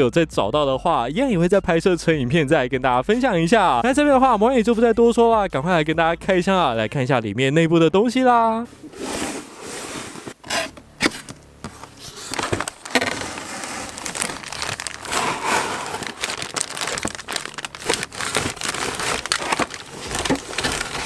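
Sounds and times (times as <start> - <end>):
packaging crinkling and rustling: 8.7 - 21.0.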